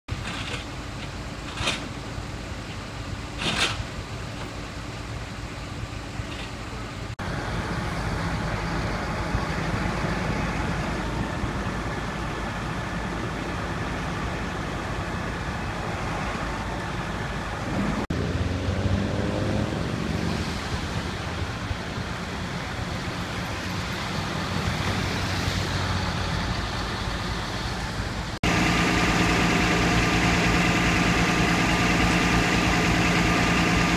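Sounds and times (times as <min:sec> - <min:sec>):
road traffic: 0:00.1 - 0:33.9
engine revving: 0:17.6 - 0:21.4, 0:28.4 - 0:33.9.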